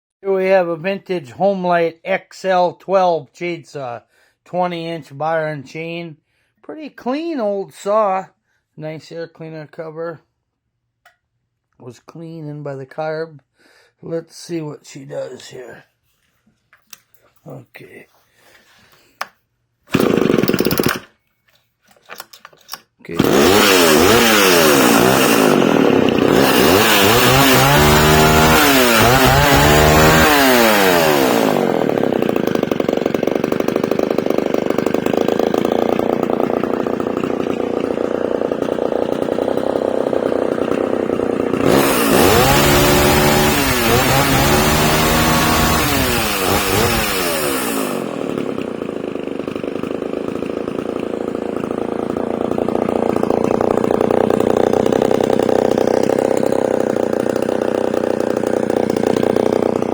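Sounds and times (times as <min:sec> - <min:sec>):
chainsaw revving and idling: 0:19.9 - 0:21.2, 0:22.2 - 0:59.9.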